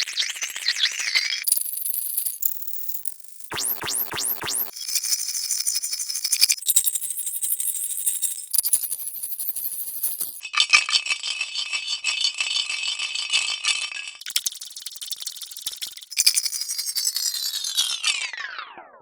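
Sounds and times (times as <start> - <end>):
baby rattle shaking: 4.8 - 18.0.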